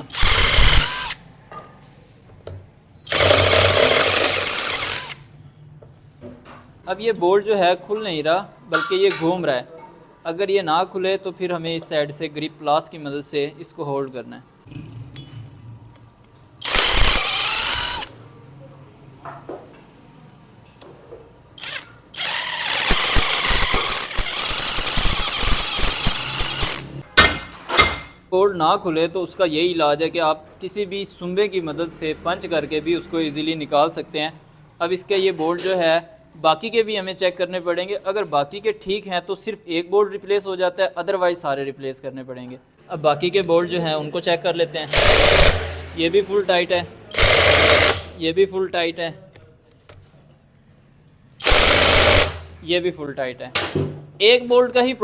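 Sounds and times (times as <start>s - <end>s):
impact wrench bursts: 0.0s - 1.2s, 3.1s - 5.3s, 16.6s - 18.1s, 21.6s - 27.0s, 44.9s - 46.0s, 47.1s - 48.2s, 51.4s - 52.6s
power tool running: 0.0s - 1.2s, 3.1s - 5.2s, 16.6s - 18.1s, 21.6s - 27.0s, 44.9s - 46.0s, 47.1s - 48.2s, 51.4s - 52.5s.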